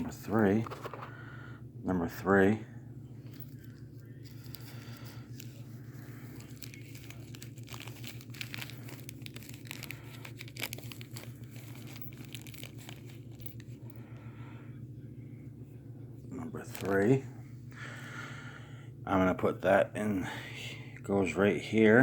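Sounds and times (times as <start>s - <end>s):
steady low hum: 0.0s - 22.0s
packaging rustling and crinkling: 3.3s - 14.0s.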